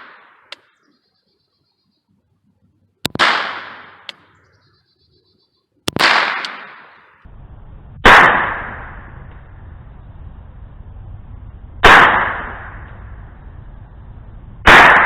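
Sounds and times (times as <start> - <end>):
gunshots with echo: 3.0 - 4.2, 5.9 - 7.2, 8.0 - 9.1, 11.8 - 12.9, 14.6 - 15.0.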